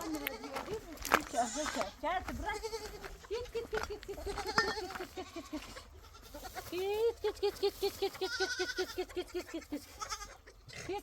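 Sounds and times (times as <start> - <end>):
goats bleating: 0.0 - 11.0.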